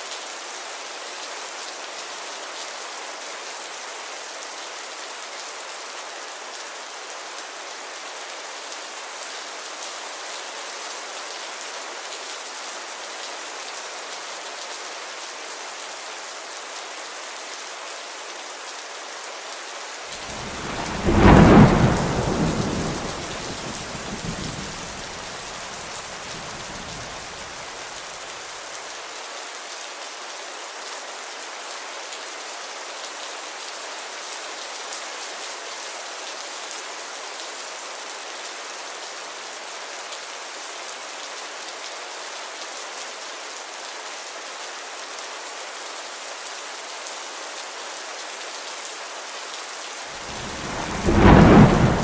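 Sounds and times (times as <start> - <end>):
steady rain falling: 0.0 - 52.0
thunder clap rumbling: 20.2 - 27.6, 50.2 - 52.0.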